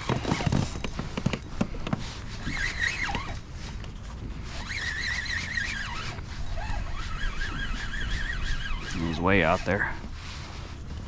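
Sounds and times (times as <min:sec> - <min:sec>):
fishing reel drag buzzing: 0:02.4 - 0:03.4, 0:04.4 - 0:09.9.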